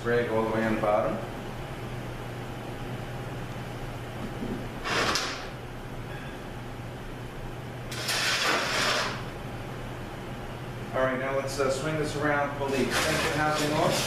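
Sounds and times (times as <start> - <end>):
steady low hum: 0.0 - 14.0
metal parts scraping: 12.8 - 14.0.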